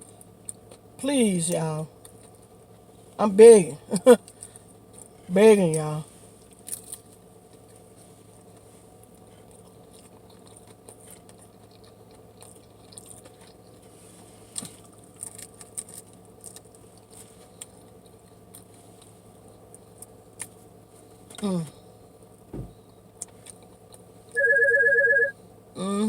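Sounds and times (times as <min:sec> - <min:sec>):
low steady hum: 0:00.0 - 0:26.0
chewing crunchy food: 0:01.9 - 0:02.9, 0:06.4 - 0:21.4, 0:23.0 - 0:24.1.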